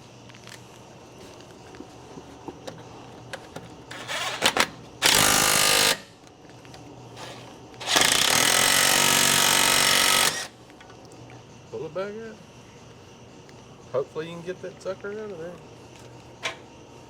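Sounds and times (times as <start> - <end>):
power tool running: 3.9 - 6.1, 7.2 - 10.6.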